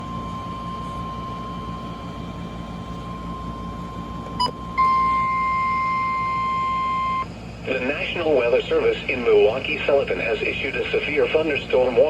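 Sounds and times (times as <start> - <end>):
faint steady tone: 0.0 - 9.0
low hum: 0.0 - 12.0
loud alarm tone: 3.1 - 7.3.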